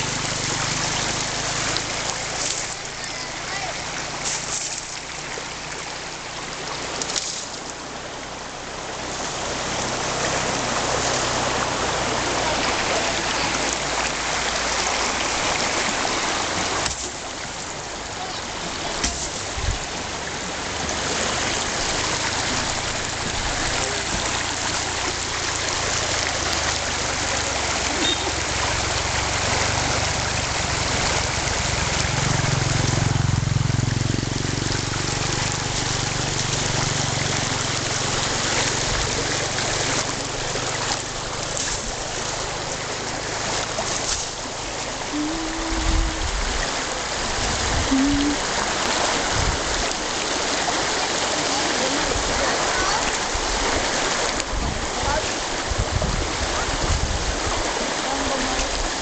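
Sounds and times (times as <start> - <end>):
water rushing: 0.0 - 59.0
low hum: 29.9 - 41.9.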